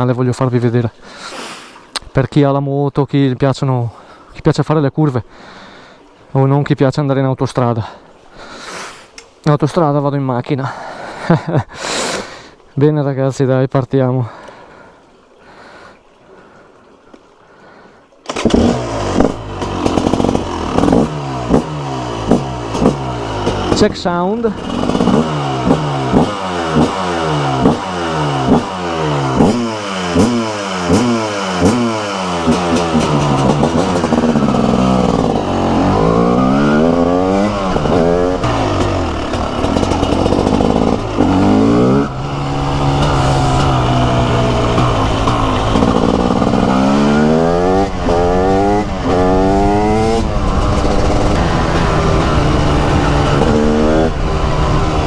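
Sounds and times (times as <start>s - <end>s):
two-stroke motorcycle engine revving: 18.3s - 55.0s.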